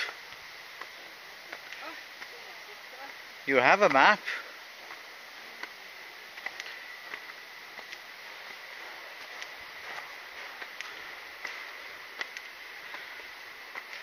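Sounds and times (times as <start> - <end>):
steady hiss: 0.0 - 14.0
light ticks and taps: 12.2 - 13.0.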